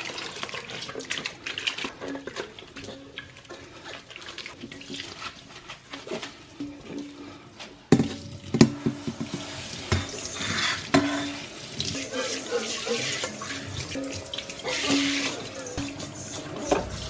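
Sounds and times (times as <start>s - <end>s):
water running from tap: 7.9s - 17.0s.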